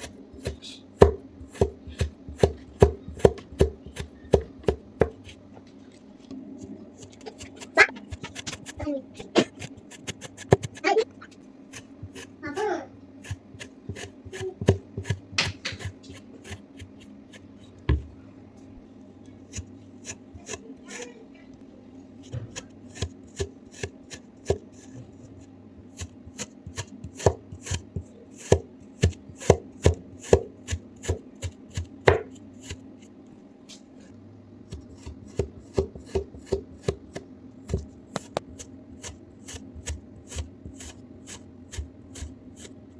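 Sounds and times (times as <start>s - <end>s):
knife cutting sand: 9.4s - 10.8s, 13.2s - 17.5s, 39.0s - 42.8s.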